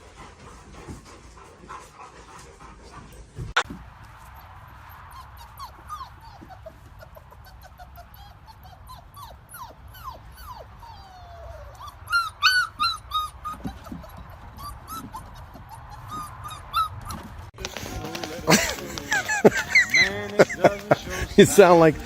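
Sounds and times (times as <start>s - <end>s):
dog yelping: 4.8s - 17.4s
dog whining and whimpering: 5.1s - 17.4s.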